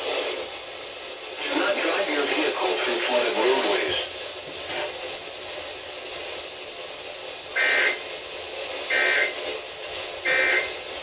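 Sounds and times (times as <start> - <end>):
radio static hiss: 1.3 - 5.8, 7.5 - 11.0.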